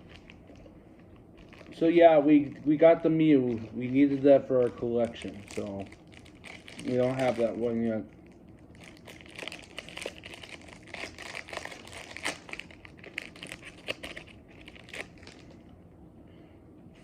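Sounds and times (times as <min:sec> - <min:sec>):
foil wrapper tearing and crinkling: 0:01.4 - 0:07.7, 0:08.7 - 0:15.6.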